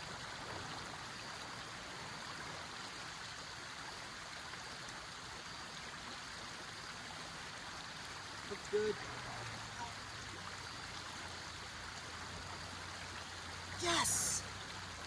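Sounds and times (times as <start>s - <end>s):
river water rushing over rocks: 8.0s - 15.0s.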